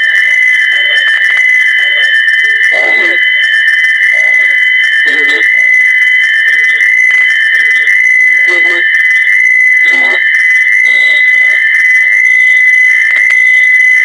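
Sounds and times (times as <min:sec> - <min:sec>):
garbled voice fragments: 0:00.1 - 0:09.0, 0:09.8 - 0:11.7.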